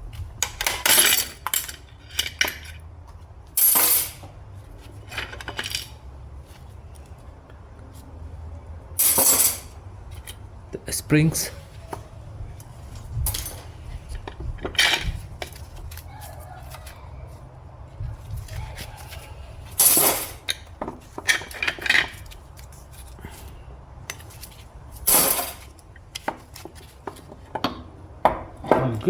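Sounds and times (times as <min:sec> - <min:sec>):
metal parts clinking and clattering: 0:00.4 - 0:02.8, 0:03.6 - 0:04.3, 0:04.9 - 0:06.0, 0:09.0 - 0:10.4, 0:13.2 - 0:16.0, 0:18.8 - 0:23.2, 0:24.2 - 0:26.2.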